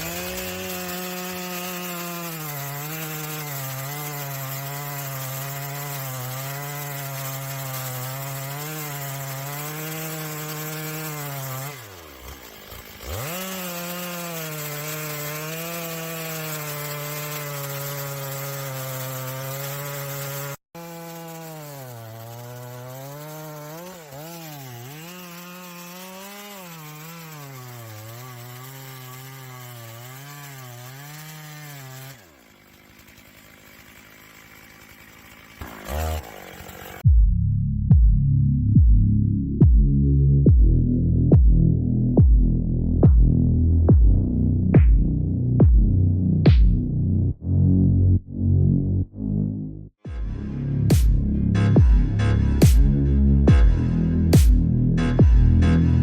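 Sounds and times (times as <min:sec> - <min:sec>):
chainsaw cutting wood: 0:00.0 - 0:37.1, 0:41.4 - 0:47.6, 0:50.0 - 0:56.0.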